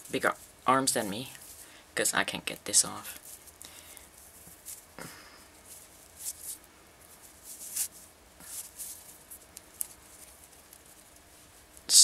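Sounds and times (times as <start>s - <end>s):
beaded bracelet rustling and clicking: 5.6s - 11.9s.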